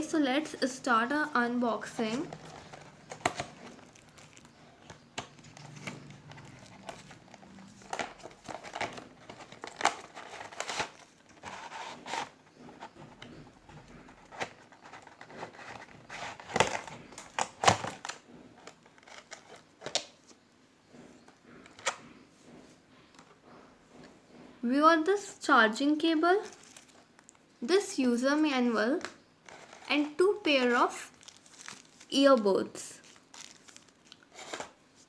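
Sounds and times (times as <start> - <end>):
packaging crinkling and rustling: 1.8 - 13.3, 13.9 - 20.3, 26.3 - 27.4, 29.4 - 35.0.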